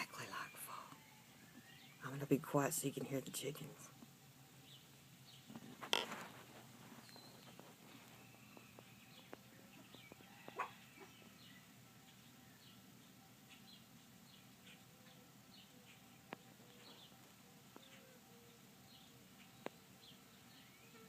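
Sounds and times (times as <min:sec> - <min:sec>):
small birds chirping: 0:00.0 - 0:21.0
distant animal calls: 0:07.2 - 0:13.9, 0:14.5 - 0:19.8.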